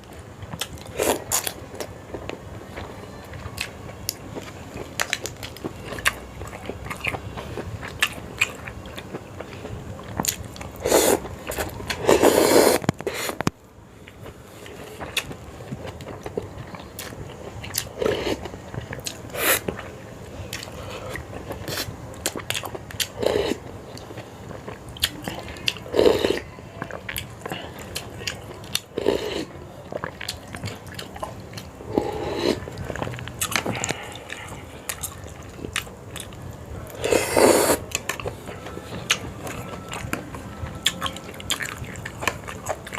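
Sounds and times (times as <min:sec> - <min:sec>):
person chewing with smacks: 0:00.1 - 0:19.9, 0:20.5 - 0:42.9
slurping noodles: 0:10.8 - 0:13.4, 0:23.2 - 0:23.6, 0:25.9 - 0:26.4, 0:29.0 - 0:29.5, 0:31.9 - 0:32.8, 0:37.0 - 0:37.9.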